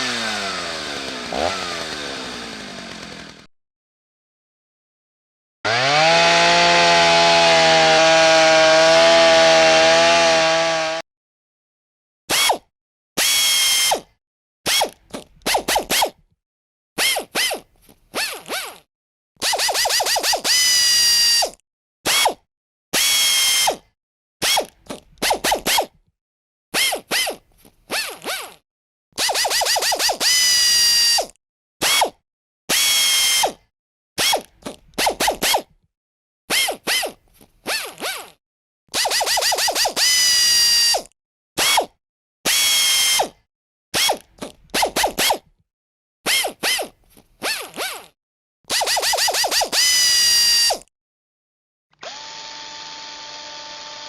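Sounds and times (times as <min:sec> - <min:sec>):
power drill motor whining: 0:00.0 - 0:03.5, 0:19.4 - 0:21.5, 0:29.2 - 0:31.3, 0:39.0 - 0:41.0, 0:48.7 - 0:50.8, 0:52.0 - 0:54.0.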